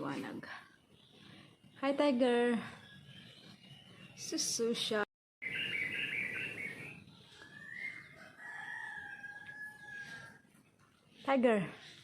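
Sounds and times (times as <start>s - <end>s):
bird warbling chirps: 5.4s - 8.2s.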